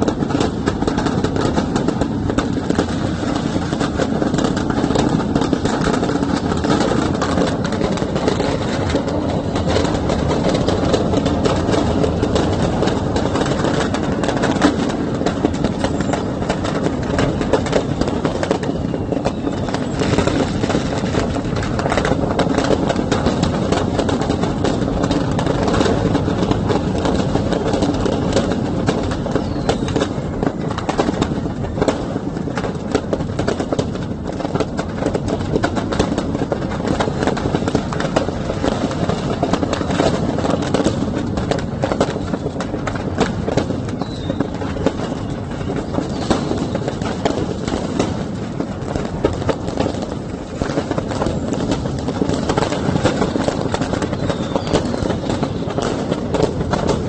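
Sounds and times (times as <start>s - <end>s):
loud steady din: 0.0s - 29.5s
firecrackers crackling and popping: 0.0s - 57.0s.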